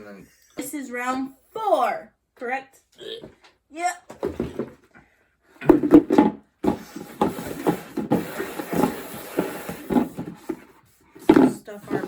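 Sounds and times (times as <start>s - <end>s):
objects rustling and scraping: 3.2s - 12.0s
objects knocking: 4.1s - 5.0s, 5.6s - 12.0s.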